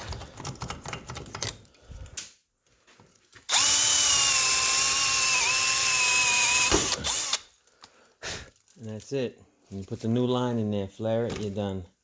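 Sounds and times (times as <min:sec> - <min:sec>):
power drill whining: 0:03.5 - 0:07.5.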